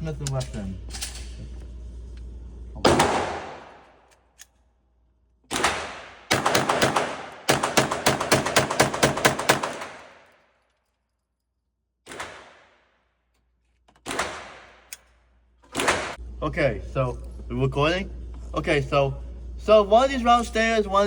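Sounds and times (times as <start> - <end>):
pistol shots echoing: 2.8 - 3.9, 5.5 - 10.2.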